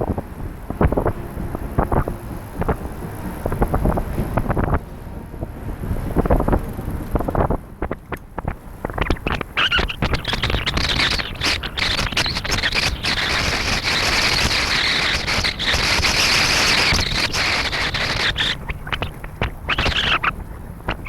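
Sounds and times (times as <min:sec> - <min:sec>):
road noise of moving trike: 0:00.0 - 0:21.0
wind buffeting microphone: 0:00.0 - 0:21.0
steady hiss: 0:08.8 - 0:21.0.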